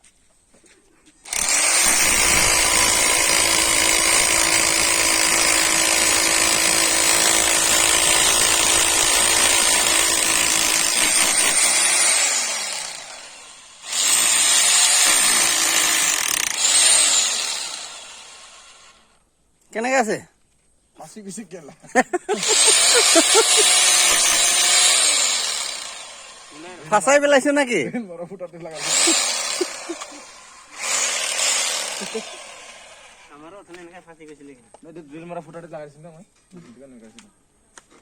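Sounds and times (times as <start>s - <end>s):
hammer drill drilling into concrete: 1.3s - 19.1s, 22.4s - 27.0s, 28.8s - 33.4s.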